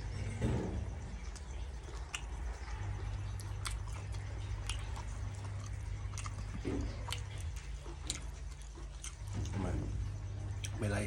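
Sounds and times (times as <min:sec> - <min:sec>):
person chewing food: 0:00.0 - 0:10.8
low steady hum: 0:00.0 - 0:11.0
wet mouth smacking: 0:01.4 - 0:02.5.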